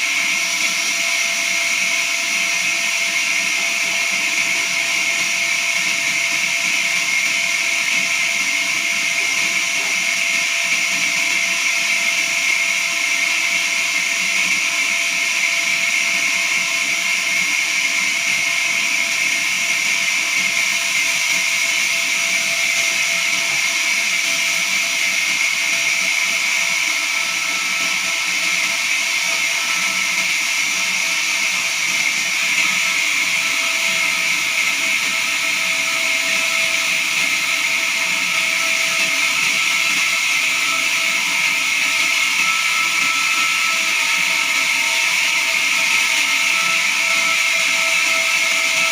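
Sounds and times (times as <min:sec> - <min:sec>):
band sawmill whine: 0:20.0 - 0:48.9.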